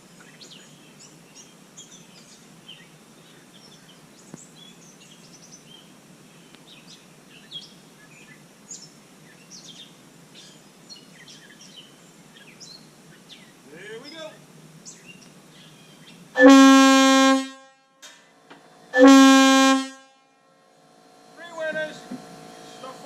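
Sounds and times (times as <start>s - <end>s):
small birds chirping: 0.0s - 16.4s.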